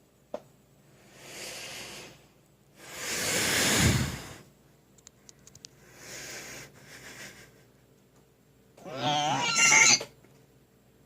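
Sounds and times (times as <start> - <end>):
breathy hisses: 0.9 - 4.5, 5.8 - 7.5
faint clicks: 5.0 - 5.8.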